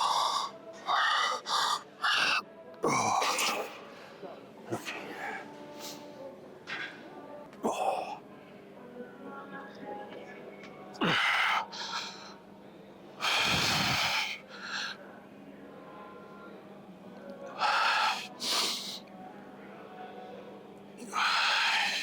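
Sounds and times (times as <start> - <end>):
man breathing forcefully: 13.2 - 14.3.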